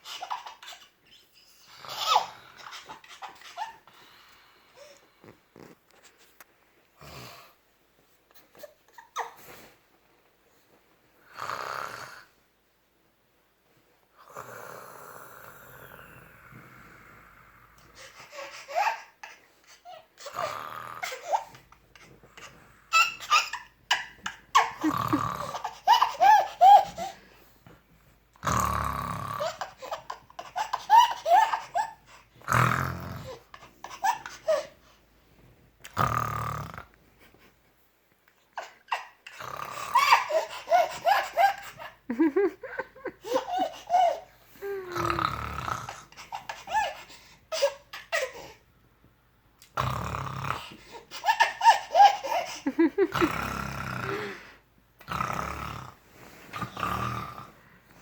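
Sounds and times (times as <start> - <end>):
man snoring loudly: 11.3 - 12.2, 24.8 - 25.5, 28.4 - 29.4, 32.5 - 33.3, 36.0 - 36.8, 44.9 - 46.0, 49.8 - 50.6, 53.1 - 54.4, 55.1 - 56.0, 56.6 - 57.5
child giggling: 40.0 - 44.2.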